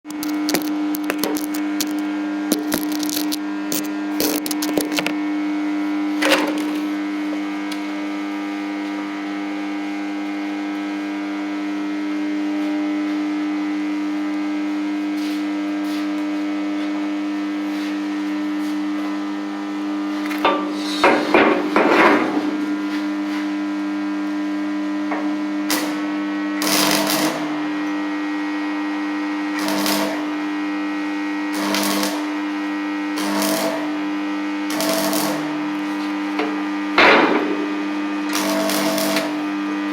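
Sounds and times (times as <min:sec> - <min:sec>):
welding crackle: 0:00.1 - 0:05.2, 0:06.4 - 0:07.9, 0:25.6 - 0:28.0, 0:29.2 - 0:39.9
welding machine humming: 0:00.1 - 0:39.9.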